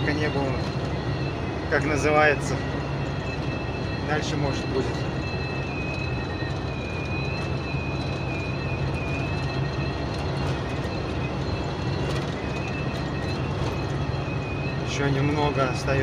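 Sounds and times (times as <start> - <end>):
engine and tyres droning: 0.0 - 16.0
high-pitched wind whistle: 0.0 - 16.0.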